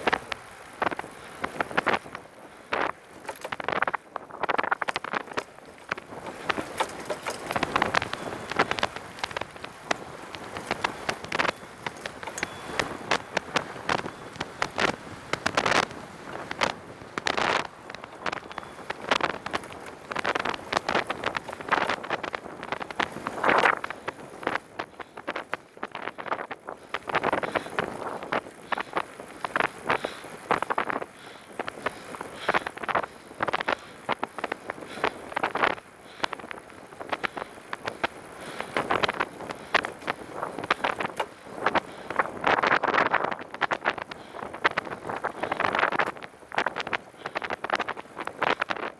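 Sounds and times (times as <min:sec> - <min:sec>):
wind buffeting microphone: 0:00.0 - 0:48.9
clicks and rattles: 0:06.2 - 0:15.8.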